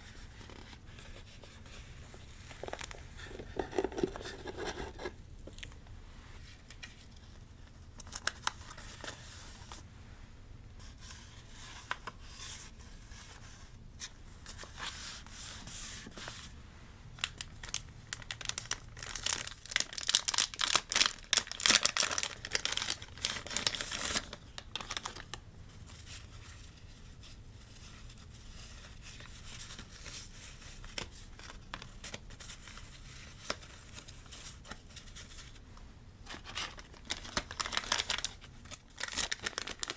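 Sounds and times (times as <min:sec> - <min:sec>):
paper tearing and crinkling: 0:17.3 - 0:25.3, 0:36.3 - 0:39.9.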